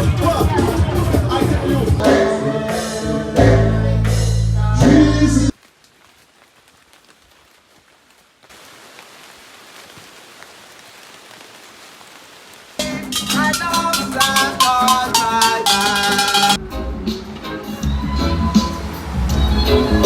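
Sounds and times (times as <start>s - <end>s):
loud music with heavy bass: 0.0s - 5.5s, 12.8s - 20.0s.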